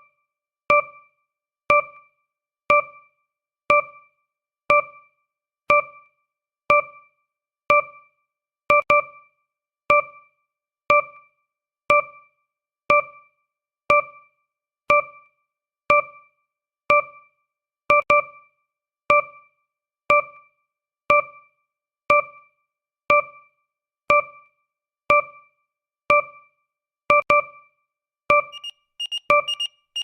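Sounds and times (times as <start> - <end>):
short electronic beeps: 28.4 - 30.0
rapid beeping alarm: 28.5 - 30.0.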